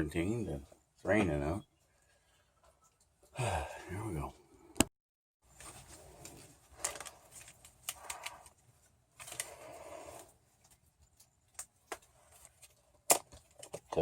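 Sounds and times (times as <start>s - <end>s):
rustling: 5.4s - 13.8s.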